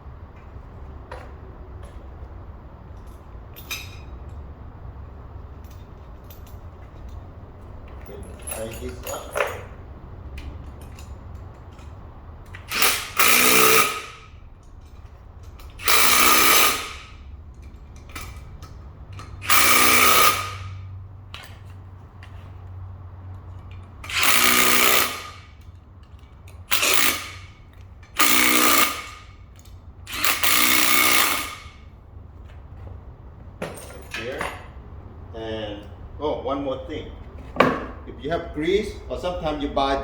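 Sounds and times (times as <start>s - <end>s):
power drill bursts: 12.6s - 14.3s, 15.8s - 17.2s, 19.2s - 20.9s, 24.0s - 25.6s, 26.7s - 29.4s, 30.1s - 31.8s.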